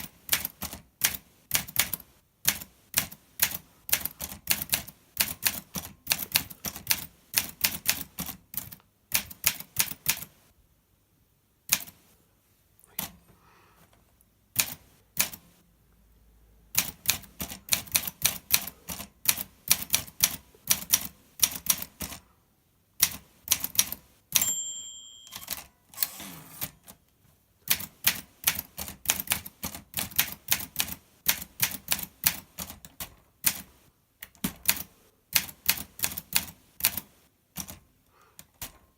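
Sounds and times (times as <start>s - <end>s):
typewriter bell ding: 24.3s - 26.2s
typewriter carriage sliding: 25.9s - 26.9s.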